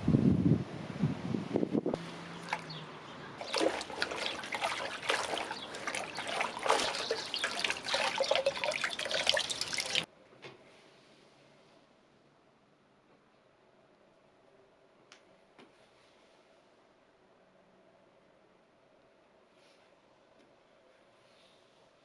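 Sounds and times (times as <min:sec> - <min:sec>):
water trickling and splashing: 0:02.0 - 0:10.1.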